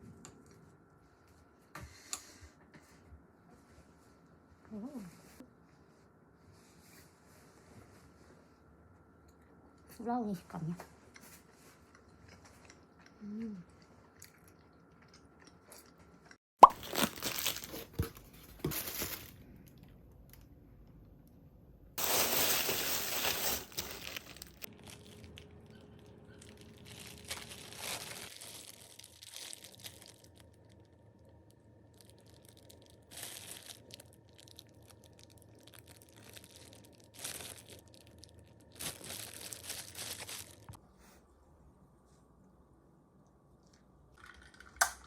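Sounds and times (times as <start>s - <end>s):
plastic packaging crinkling and tearing: 16.6s - 20.4s, 22.0s - 30.8s, 31.9s - 40.8s.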